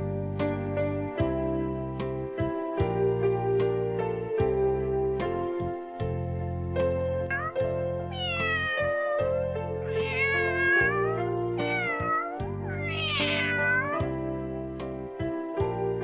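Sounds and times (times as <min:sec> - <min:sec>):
soft piano music: 0:00.0 - 0:16.0
cat meowing: 0:07.2 - 0:14.2.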